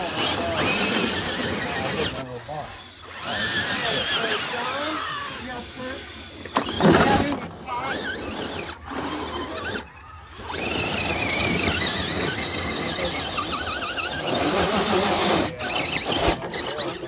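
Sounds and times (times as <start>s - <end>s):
electric motor and gears whining: 0.0s - 17.0s.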